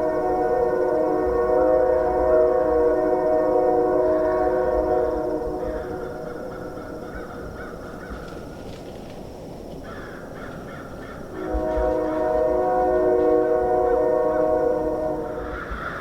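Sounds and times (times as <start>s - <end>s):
train horn chord: 0.0s - 6.4s, 11.3s - 16.0s
crows cawing: 5.5s - 8.8s, 9.8s - 16.0s.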